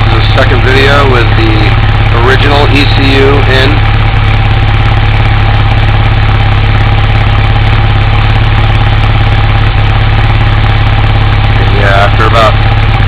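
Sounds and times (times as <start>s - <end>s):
car engine running: 0.0s - 13.0s.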